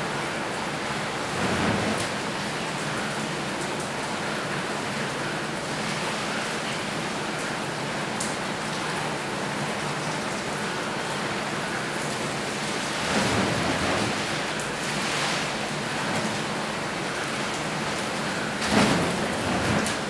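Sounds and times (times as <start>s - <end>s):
shower water spraying: 12.3s - 20.0s.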